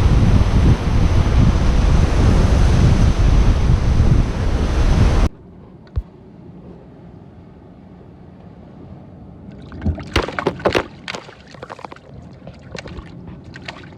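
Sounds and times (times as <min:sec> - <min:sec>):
seawater sloshing and splashing: 0:09.4 - 0:13.9.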